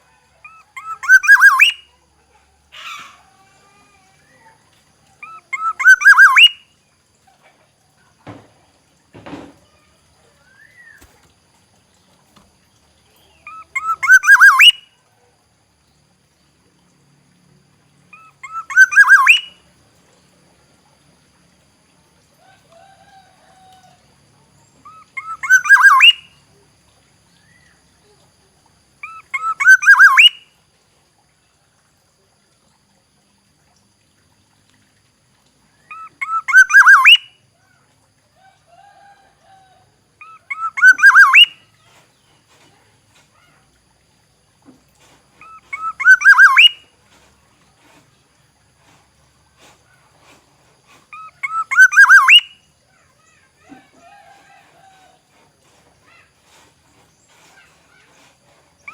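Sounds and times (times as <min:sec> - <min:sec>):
oriole calling: 0:00.4 - 0:01.8, 0:05.2 - 0:06.6, 0:13.3 - 0:14.8, 0:18.1 - 0:19.6, 0:24.8 - 0:26.3, 0:29.0 - 0:30.4, 0:35.9 - 0:37.3, 0:38.9 - 0:41.6, 0:45.4 - 0:46.8, 0:51.1 - 0:52.5.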